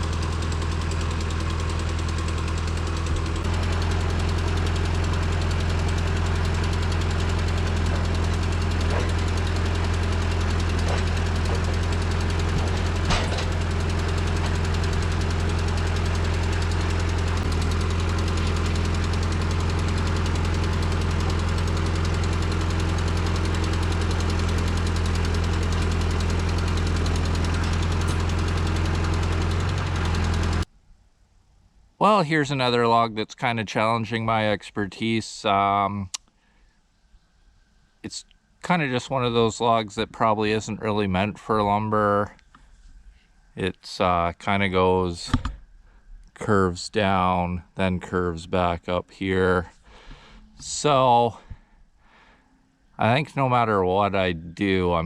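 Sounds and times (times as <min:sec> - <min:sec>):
sawmill engine running: 0:00.0 - 0:30.7
click: 0:36.1 - 0:36.4.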